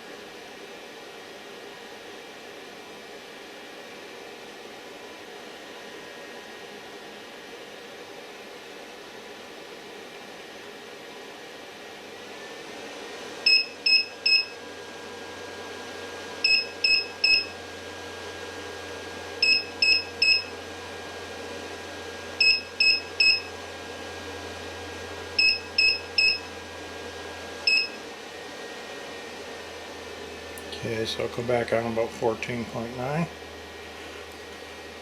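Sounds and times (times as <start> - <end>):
high alarm beeps: 13.5 - 14.6, 16.4 - 17.5, 19.4 - 20.5, 22.4 - 23.5, 25.4 - 26.5, 27.7 - 28.0
steady low hum: 15.8 - 17.8, 18.9 - 35.0.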